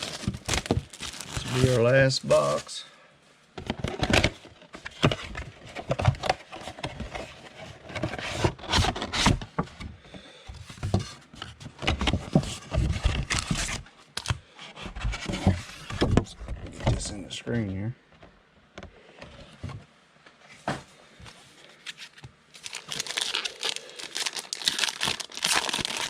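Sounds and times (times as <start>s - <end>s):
wrappers crinkling and tearing: 0.0s - 2.8s, 21.9s - 26.0s.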